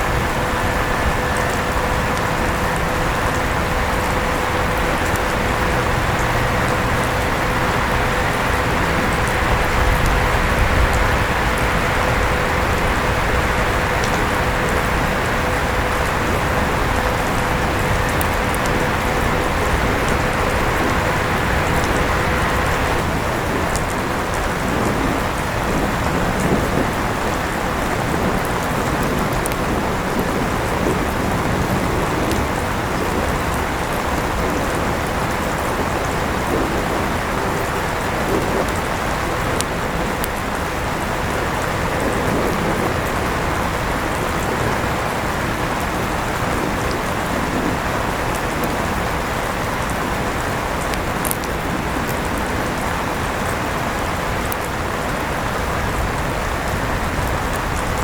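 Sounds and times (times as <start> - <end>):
electric fan whooshing: 0.0 - 58.0
steady rain falling: 0.0 - 58.0.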